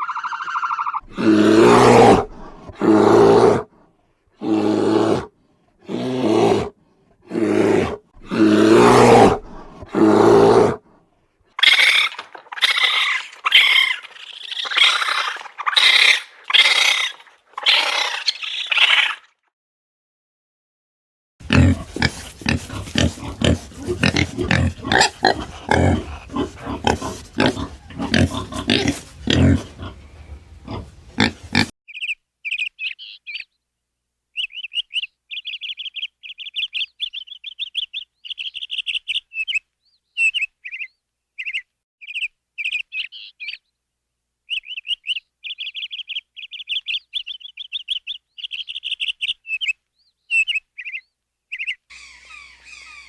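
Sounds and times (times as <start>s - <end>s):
pigs grunting: 1.0s - 3.7s, 4.4s - 10.8s, 11.6s - 19.3s, 21.4s - 31.7s, 51.9s - 53.0s
small birds chirping: 11.6s - 19.3s, 21.5s - 33.7s, 34.3s - 43.8s, 44.5s - 53.0s.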